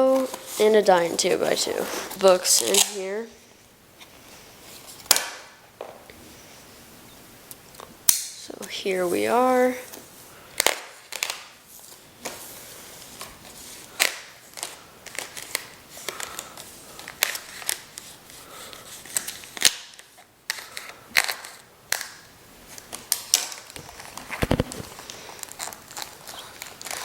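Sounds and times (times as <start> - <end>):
packaging clicking and crinkling: 10.6 - 27.0.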